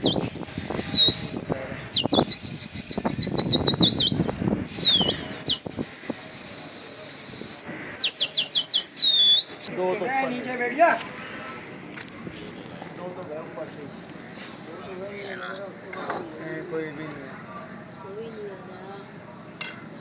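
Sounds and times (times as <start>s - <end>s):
person whistling: 0.0s - 9.7s.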